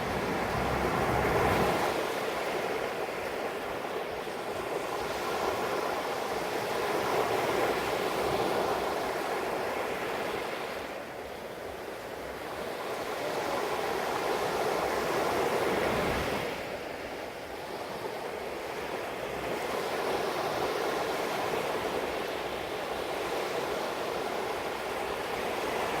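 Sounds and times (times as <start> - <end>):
sea waves washing in: 0.0 - 4.1.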